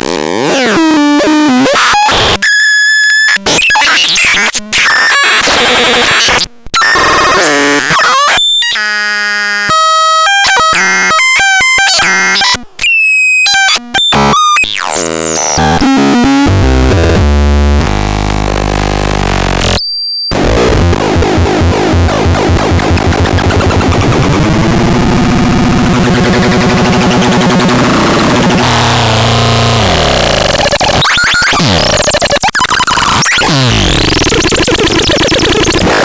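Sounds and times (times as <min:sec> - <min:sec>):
electronic synthesizer sounds: 0:03.3 - 0:36.0.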